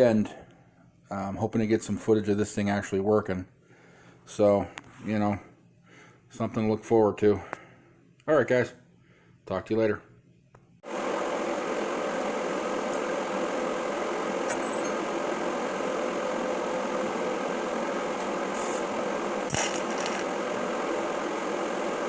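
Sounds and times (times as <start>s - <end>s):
machine hum: 10.8s - 22.0s.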